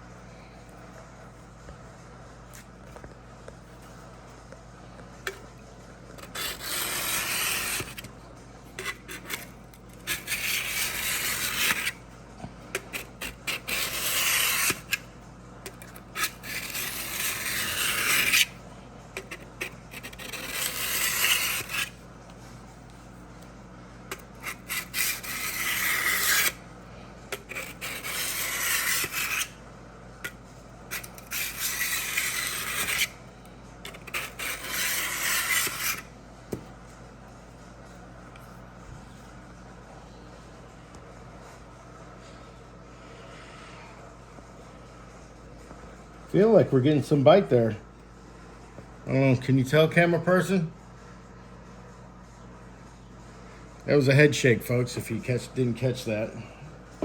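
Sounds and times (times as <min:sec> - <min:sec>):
blade scraping on sharpening block: 0:06.2 - 0:08.1, 0:08.8 - 0:11.9, 0:13.0 - 0:15.0, 0:15.7 - 0:18.5, 0:19.2 - 0:22.0, 0:24.1 - 0:26.6, 0:27.4 - 0:29.5, 0:30.9 - 0:33.1, 0:33.9 - 0:36.0.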